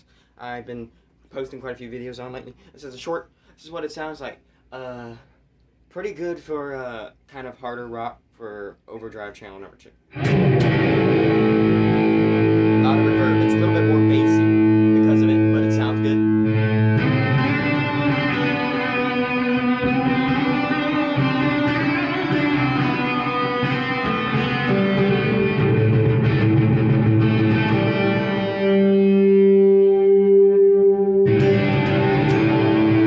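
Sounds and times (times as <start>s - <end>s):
overdriven electric guitar: 10.1s - 33.0s.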